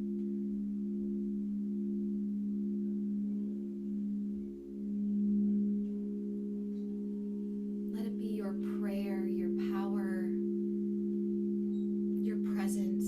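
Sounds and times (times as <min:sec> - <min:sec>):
singing bowls ringing: 0:00.0 - 0:13.0
person's voice: 0:08.0 - 0:10.3, 0:12.3 - 0:13.0.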